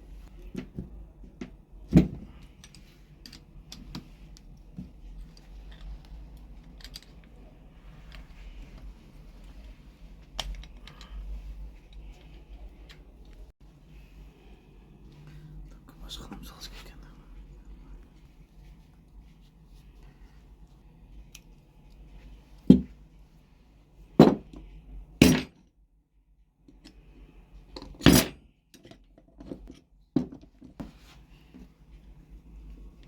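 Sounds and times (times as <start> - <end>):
low steady hum: 0.0 - 25.5.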